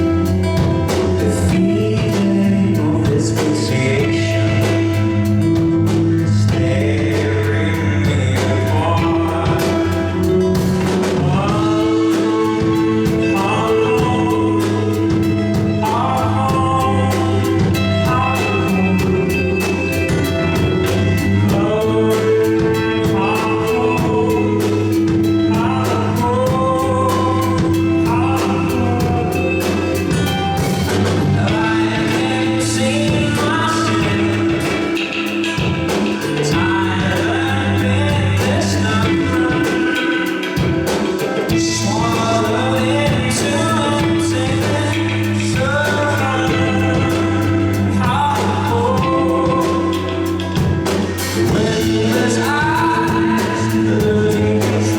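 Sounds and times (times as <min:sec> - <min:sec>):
bass line: 0:00.0 - 0:54.9
drum kit with cymbals: 0:00.0 - 0:54.9
person singing: 0:00.0 - 0:54.9.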